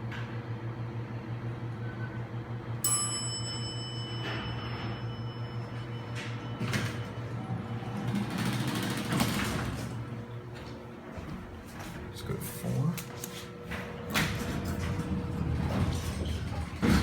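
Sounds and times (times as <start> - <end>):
elevator pump motor humming: 2.0 - 17.0
bell-like chime: 2.8 - 6.8
elevator doors knocking: 6.6 - 10.1, 13.8 - 17.0.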